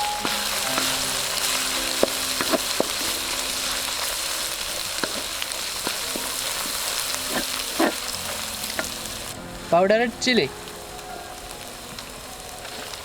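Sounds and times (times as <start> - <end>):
paste sizzling in hot oil: 0.0 - 13.0
spoon stirring and knocking on pan: 2.0 - 3.1, 5.0 - 8.0.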